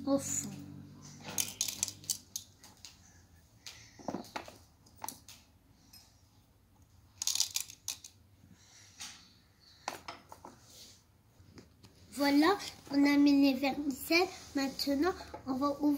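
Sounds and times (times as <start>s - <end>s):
sprinkles clicking into plastic moulds: 1.4s - 2.9s, 7.2s - 8.2s.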